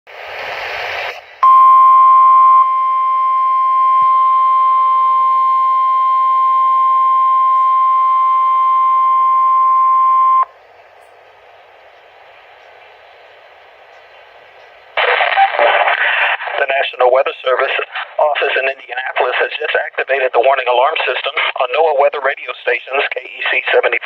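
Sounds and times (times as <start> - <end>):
low radio hiss: 0.1 - 24.0
steady high alarm tone: 1.4 - 10.5
burst of noise: 15.0 - 16.6.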